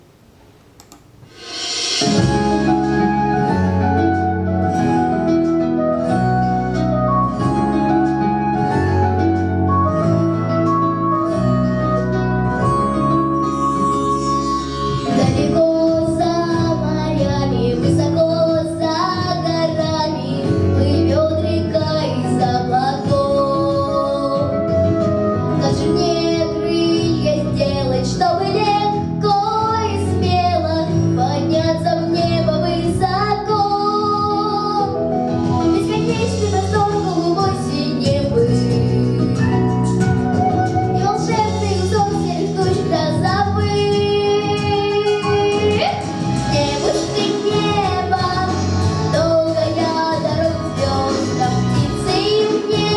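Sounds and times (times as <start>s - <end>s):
instrumental accompaniment: 0.8s - 52.9s
woman singing: 15.1s - 39.9s, 41.0s - 52.9s.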